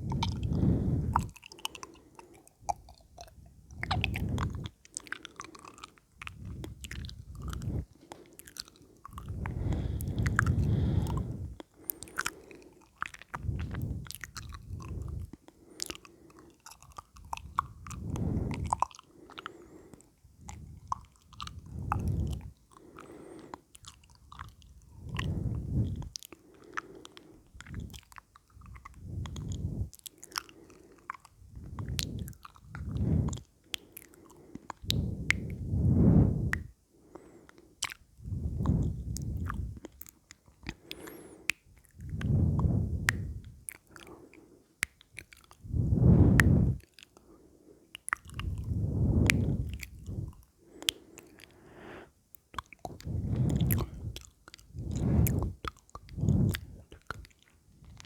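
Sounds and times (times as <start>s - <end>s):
low muffled swells: 0.0s - 1.2s, 9.3s - 11.6s, 17.7s - 18.7s, 21.5s - 22.5s, 25.0s - 26.1s, 34.9s - 36.6s, 42.1s - 43.5s, 45.6s - 46.8s, 48.4s - 50.4s, 52.9s - 57.0s
wet mouth clicks and smacks: 0.0s - 58.0s.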